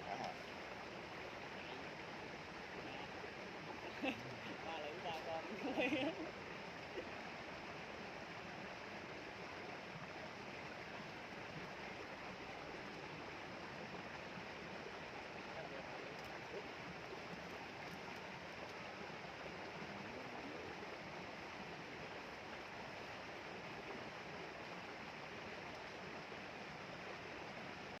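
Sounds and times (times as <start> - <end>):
flowing water rushing: 0.0 - 28.0.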